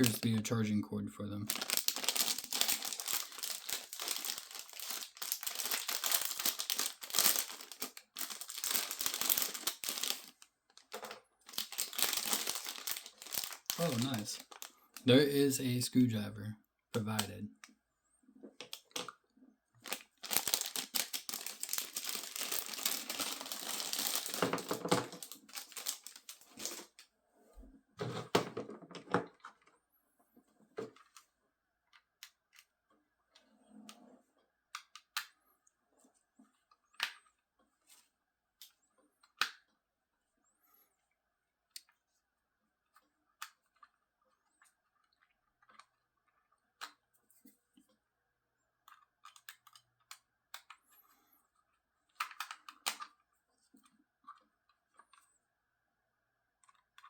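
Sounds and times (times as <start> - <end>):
packaging tearing and crinkling: 1.5 - 15.1, 19.8 - 27.0
small parts clicking and tapping: 48.8 - 50.9, 52.1 - 55.4.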